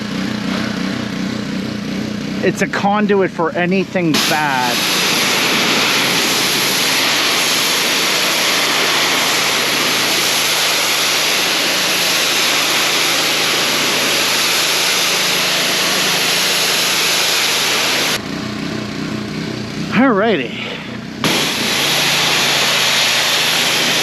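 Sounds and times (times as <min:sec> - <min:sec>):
pressure washer engine running: 0:00.0 - 0:24.0
water jet hissing against wall: 0:04.1 - 0:18.2, 0:21.2 - 0:24.0.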